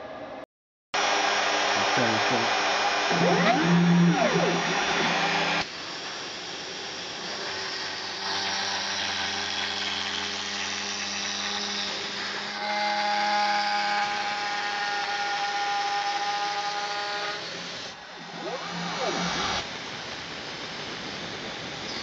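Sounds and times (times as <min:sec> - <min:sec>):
milling machine motors whining: 0:03.0 - 0:05.7, 0:18.1 - 0:19.6.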